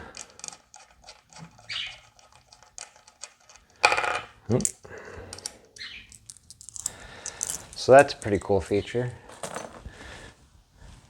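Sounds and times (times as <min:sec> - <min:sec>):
small metal hardware clinking: 0:02.4 - 0:08.5.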